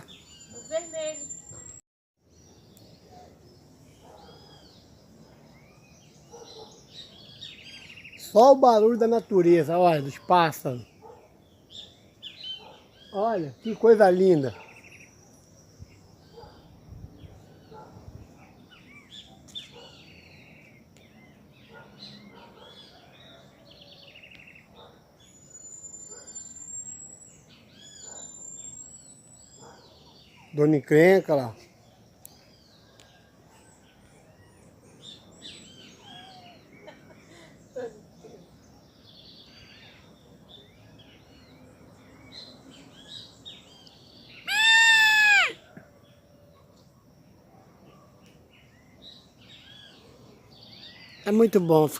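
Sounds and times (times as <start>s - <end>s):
birds chirping and singing: 0.0s - 51.9s.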